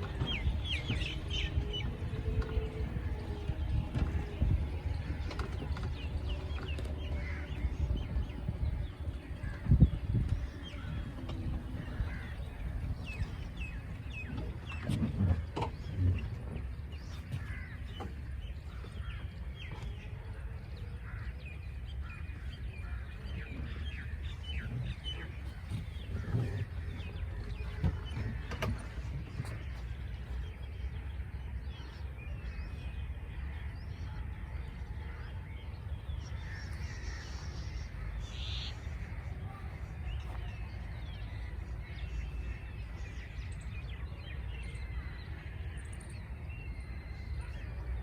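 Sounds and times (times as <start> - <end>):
small birds chirping: 0.0 - 14.9
low background rumble: 0.0 - 48.0.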